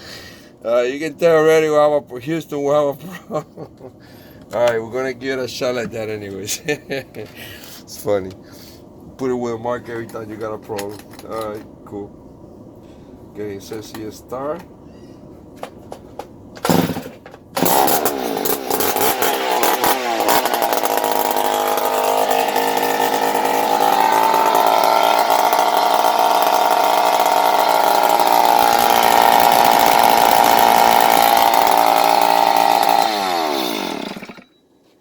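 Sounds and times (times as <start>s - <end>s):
cut-off saw engine revving: 17.6s - 34.5s.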